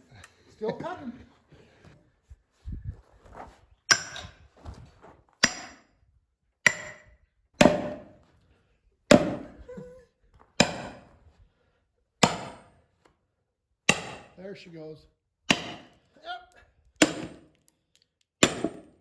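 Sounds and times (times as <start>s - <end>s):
sledgehammer striking steel wedge: 3.9s - 4.3s, 5.4s - 5.9s, 6.7s - 8.2s, 9.1s - 9.6s, 10.6s - 11.1s, 12.2s - 12.8s, 13.9s - 14.4s, 15.5s - 16.0s, 17.0s - 17.5s, 18.4s - 19.0s.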